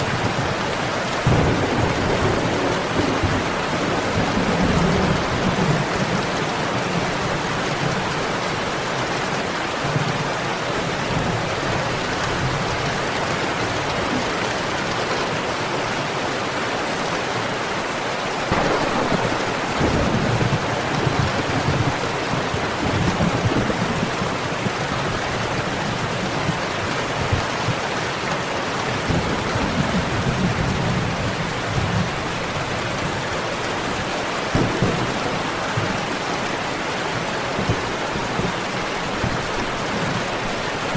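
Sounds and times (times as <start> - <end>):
steady rain: 0.0 - 40.9
thunder rumbling: 1.2 - 7.6, 18.5 - 26.3, 34.5 - 40.6.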